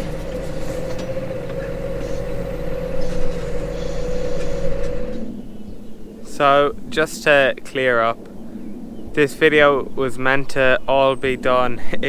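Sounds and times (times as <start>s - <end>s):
tractor engine running: 0.0s - 5.7s
steady whining tone: 0.0s - 6.4s.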